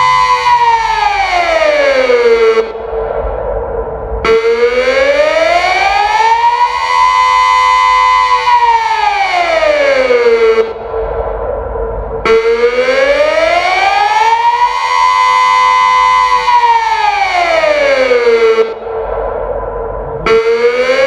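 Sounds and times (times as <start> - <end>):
siren rising and falling wail: 0.0 - 21.0.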